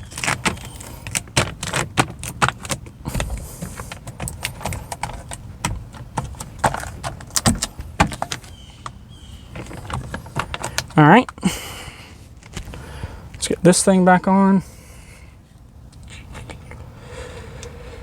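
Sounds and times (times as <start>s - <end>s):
door latch parts clicking and rattling: 0.0s - 11.0s.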